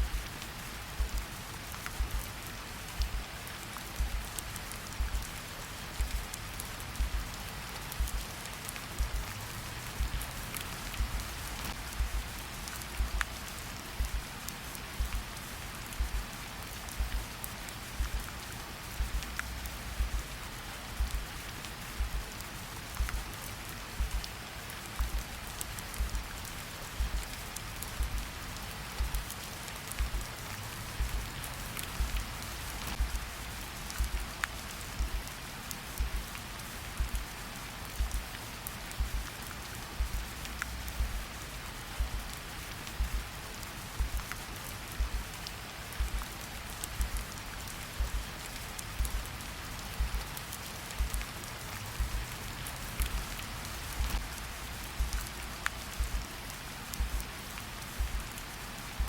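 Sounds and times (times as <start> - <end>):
slow heartbeat thumps: 0.0 - 0.2, 1.0 - 1.3, 2.0 - 2.3, 3.0 - 3.2, 4.0 - 4.4, 5.0 - 5.3, 6.0 - 6.3, 7.0 - 7.3, 8.0 - 8.3, 9.0 - 9.3, 9.9 - 13.4, 14.0 - 14.3, 15.0 - 15.3, 16.0 - 16.3, 16.9 - 17.3, 18.0 - 18.3, 19.0 - 20.4, 21.0 - 21.3, 22.0 - 22.3, 23.0 - 23.3, 24.0 - 24.3, 25.0 - 25.3, 25.9 - 26.3, 27.0 - 27.4, 28.0 - 28.4, 29.0 - 29.3, 30.0 - 30.3, 31.0 - 31.3, 32.0 - 32.4, 33.0 - 34.3, 35.0 - 35.4, 36.0 - 36.3, 37.0 - 37.4, 38.0 - 38.3, 39.0 - 39.3, 40.0 - 41.4, 42.0 - 42.4, 43.0 - 43.3, 44.0 - 44.4, 45.0 - 45.3, 46.0 - 46.3, 47.0 - 47.3, 48.0 - 48.3, 49.0 - 49.3, 50.0 - 50.3, 51.0 - 51.3, 52.0 - 52.3, 53.0 - 53.4, 54.0 - 55.3, 56.0 - 56.3, 57.0 - 57.3, 58.0 - 58.3
raindrop ticks: 0.0 - 59.0
steady rain hissing: 0.0 - 59.0.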